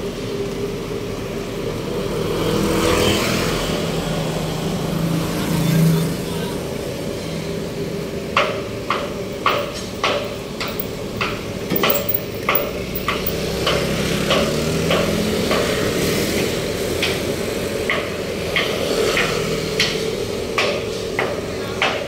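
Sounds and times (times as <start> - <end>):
road traffic hum: 0.0 - 22.0
hammer striking metal: 8.4 - 15.7.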